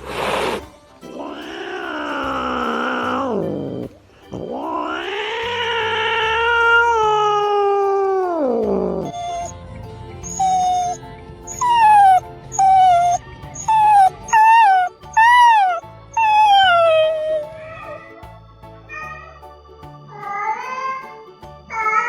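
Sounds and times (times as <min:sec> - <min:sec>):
background music: 0:00.0 - 0:22.0
whine-like animal cries: 0:01.1 - 0:09.6, 0:10.2 - 0:18.2.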